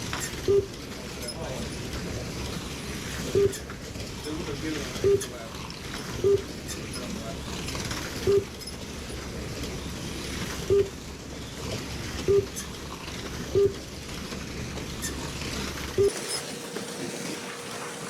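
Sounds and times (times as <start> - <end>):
slot cars running: 0.0 - 18.0
short electronic beeps: 0.4 - 0.7, 3.3 - 3.6, 5.0 - 5.3, 6.2 - 6.5, 8.2 - 8.5, 10.7 - 11.0, 12.3 - 12.6, 13.5 - 13.8, 16.0 - 16.2.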